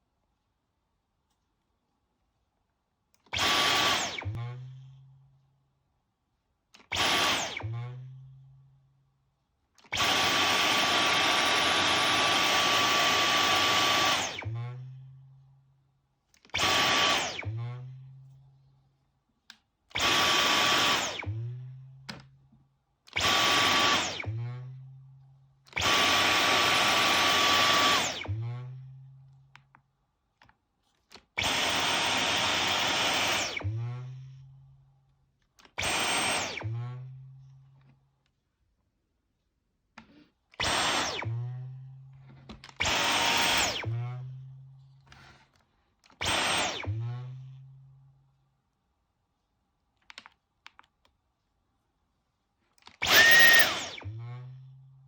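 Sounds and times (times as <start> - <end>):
cordless vacuum whining: 3.2 - 5.1, 6.8 - 8.3, 9.8 - 15.2, 16.4 - 18.2, 19.9 - 22.3, 23.1 - 25.0, 25.7 - 29.0, 31.4 - 34.4, 35.6 - 37.6, 40.0 - 47.8, 52.8 - 54.8.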